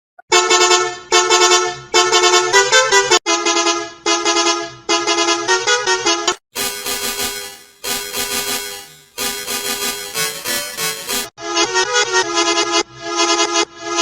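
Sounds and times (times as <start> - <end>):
multi-tone bus horn honks: 0.3 - 12.6
different horn: 6.5 - 11.3.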